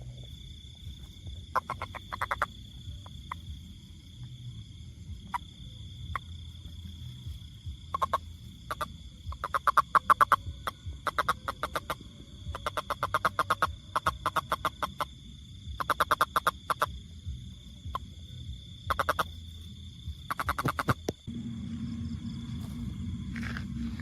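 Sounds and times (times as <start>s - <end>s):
steady low hum: 0.0s - 24.0s
frog trilling: 1.5s - 3.6s, 5.2s - 6.6s, 7.9s - 17.0s, 17.9s - 21.2s.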